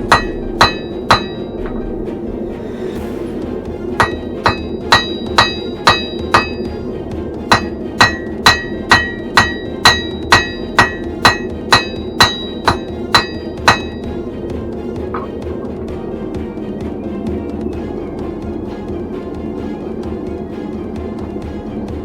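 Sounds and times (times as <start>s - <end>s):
hammer ringing on anvil: 0.0s - 1.8s, 4.0s - 6.7s, 7.5s - 14.1s
forge roaring: 0.0s - 16.6s.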